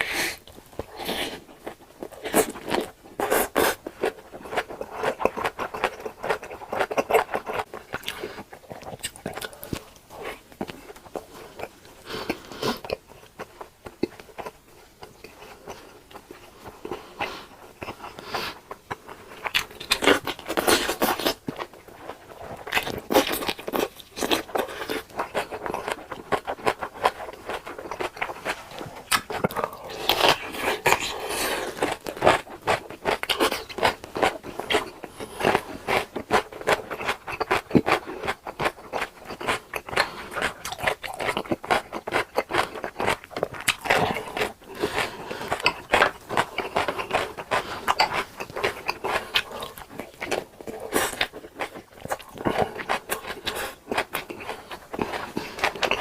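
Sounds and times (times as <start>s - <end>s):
mouth chewing crunchy food: 0.0s - 56.0s.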